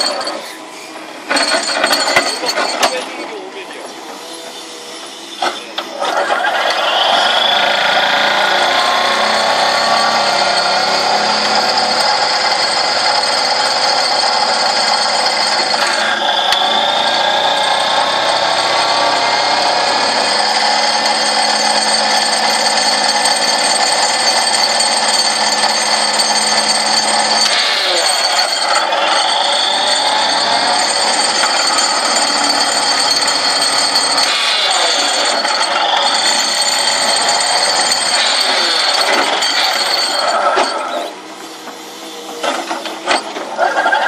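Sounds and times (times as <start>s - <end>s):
excavator ripper vibrating whine: 0.0s - 44.0s.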